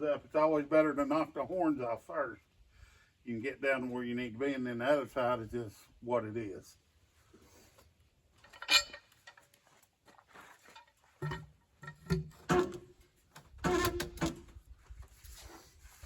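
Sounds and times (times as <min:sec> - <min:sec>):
irregular knocks and clanks: 0:10.7 - 0:12.8.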